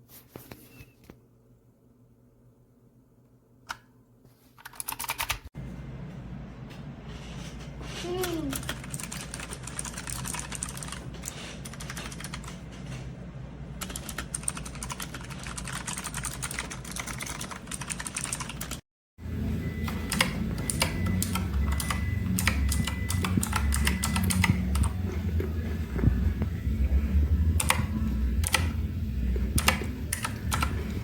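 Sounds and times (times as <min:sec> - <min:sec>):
low hum: 0:19.2 - 0:31.0.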